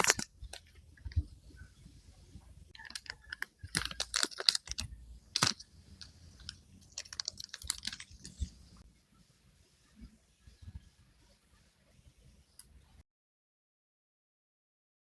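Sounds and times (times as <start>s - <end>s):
packaging clicking and crinkling: 0.0s - 1.3s, 2.7s - 8.6s.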